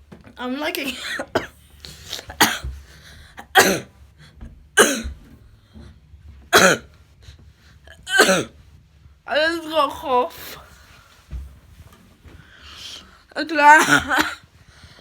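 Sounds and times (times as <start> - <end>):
child coughing: 0.9 - 1.6, 2.2 - 2.7, 3.4 - 3.9, 4.8 - 5.2, 6.5 - 6.9, 8.1 - 8.6, 13.6 - 14.5.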